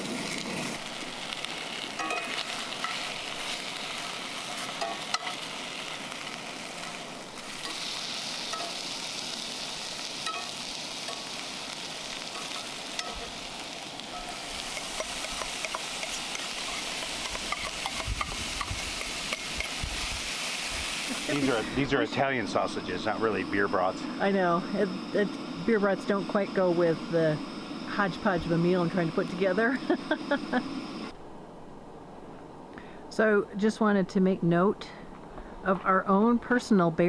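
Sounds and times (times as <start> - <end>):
food sizzling in a frying pan: 0.0 - 31.1
utensil clicking against pan: 14.7 - 19.8.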